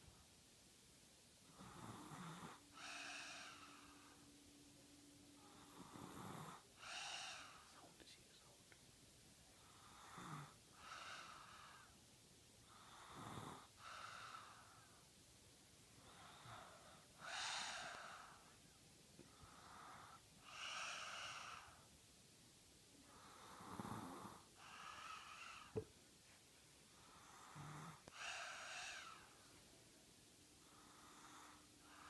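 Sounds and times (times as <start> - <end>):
faint wheezy snoring: 1.4 - 4.4, 5.4 - 7.8, 9.5 - 12.0, 12.6 - 15.0, 15.9 - 18.5, 19.2 - 21.9, 23.0 - 25.8, 26.9 - 29.5, 30.6 - 32.0.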